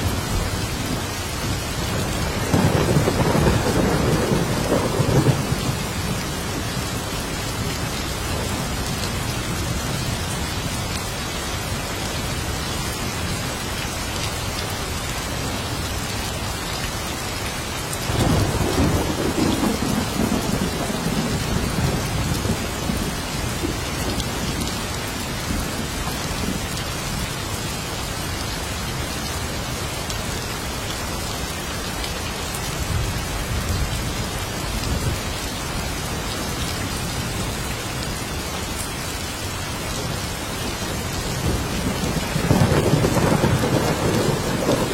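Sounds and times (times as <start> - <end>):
heavy rain: 0.0 - 44.9
thunder rumbling: 1.8 - 7.0, 18.1 - 26.6, 41.0 - 44.9.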